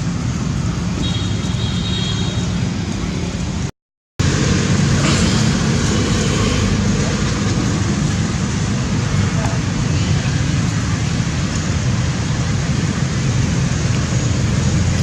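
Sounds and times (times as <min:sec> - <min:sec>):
road traffic rumble: 0:00.0 - 0:15.0.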